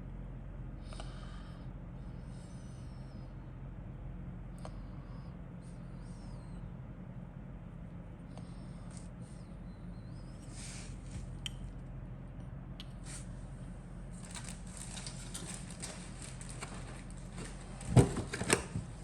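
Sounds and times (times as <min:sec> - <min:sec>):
steady low hum: 0:00.0 - 0:19.0
plastic rustling and crackling: 0:14.1 - 0:19.0.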